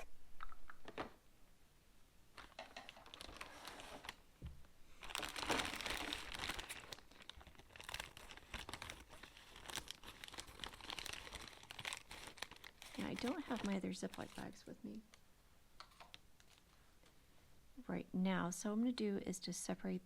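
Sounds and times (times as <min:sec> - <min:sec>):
plastic bag crinkling: 0:02.3 - 0:04.3, 0:04.9 - 0:15.2, 0:15.8 - 0:16.8.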